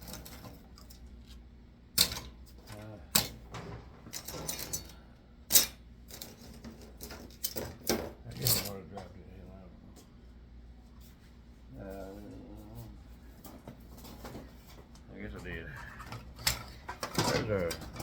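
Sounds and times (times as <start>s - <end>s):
scrap parts clattering: 2.0s - 8.8s, 16.0s - 18.0s.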